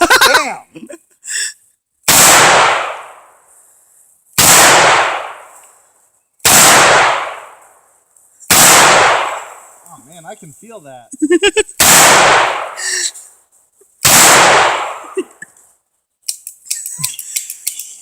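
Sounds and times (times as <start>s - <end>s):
revolver gunshots with echo: 2.1s - 3.4s, 4.4s - 5.6s, 6.4s - 7.7s, 8.5s - 9.7s, 11.8s - 12.8s, 14.0s - 15.1s.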